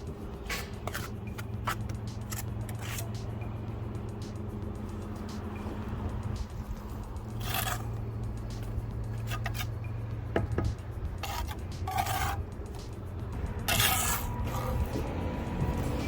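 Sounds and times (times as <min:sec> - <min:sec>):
trowel scraping mortar: 0:00.4 - 0:03.2, 0:07.3 - 0:09.9, 0:11.2 - 0:12.8, 0:13.6 - 0:15.1.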